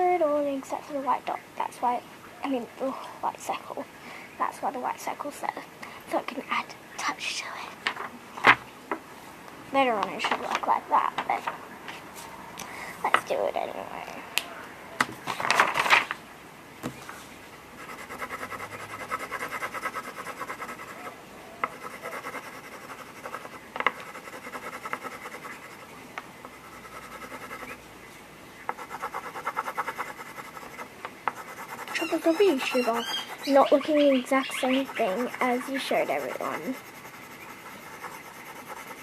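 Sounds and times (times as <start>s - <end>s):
paper rustle: 15.2s - 16.2s
pencil scribbling on paper: 17.8s - 27.8s, 28.7s - 39.0s.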